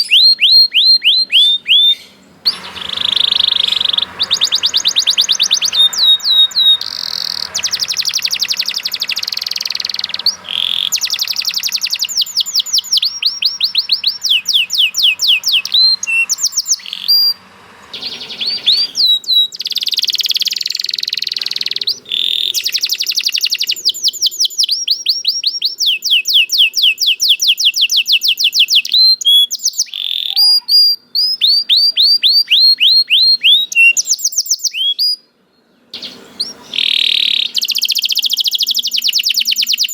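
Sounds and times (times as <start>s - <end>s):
canary singing fast trills: 0.0s - 39.9s.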